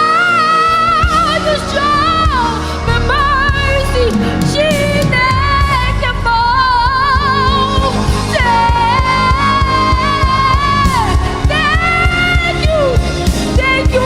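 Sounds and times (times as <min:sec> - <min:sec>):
instrumental accompaniment: 0:00.0 - 0:14.0
woman singing: 0:00.0 - 0:14.0.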